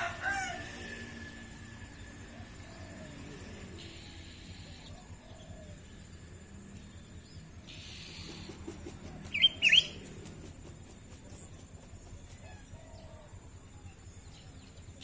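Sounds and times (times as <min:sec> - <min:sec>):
songbird sharp chirps: 0:03.8 - 0:10.1
faint chickens: 0:12.2 - 0:15.0.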